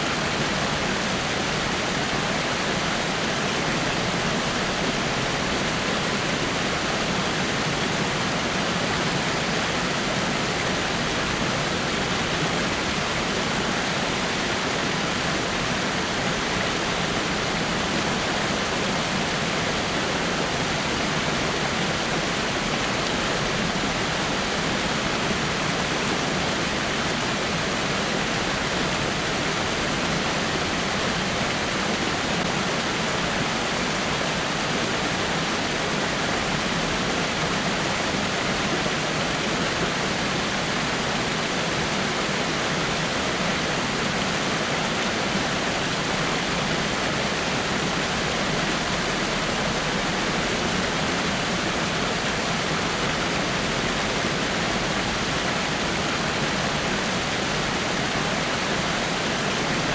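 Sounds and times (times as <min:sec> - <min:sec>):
water rushing over rocks: 0:00.0 - 0:59.9.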